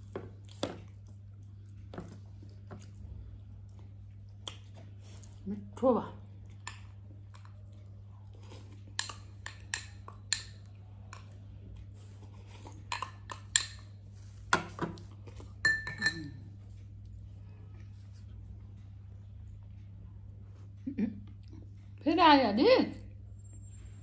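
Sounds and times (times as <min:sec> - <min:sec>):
utensil clinking against a dish: 0:08.9 - 0:11.2, 0:15.6 - 0:16.4.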